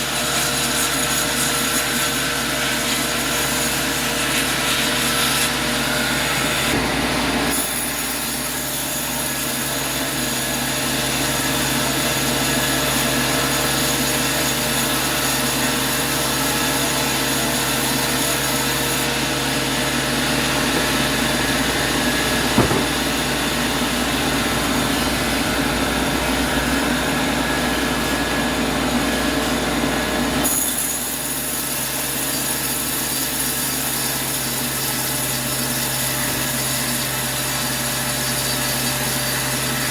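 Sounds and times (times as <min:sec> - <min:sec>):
sawmill machinery drone: 0:00.0 - 0:39.9
sharp knock: 0:20.7 - 0:23.4.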